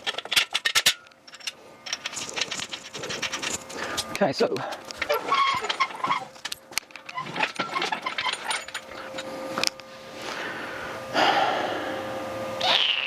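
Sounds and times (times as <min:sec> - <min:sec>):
metal gear clinking: 0:00.0 - 0:04.2, 0:04.8 - 0:09.7.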